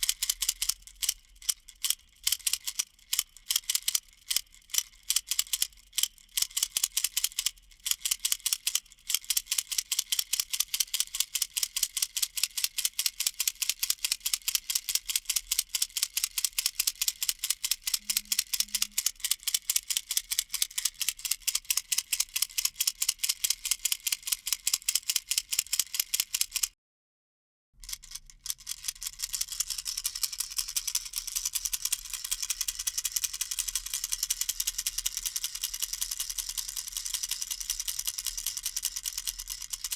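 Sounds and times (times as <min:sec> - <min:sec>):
baby rattle shaken rapidly: 0:12.2 - 0:26.6, 0:27.8 - 0:39.9.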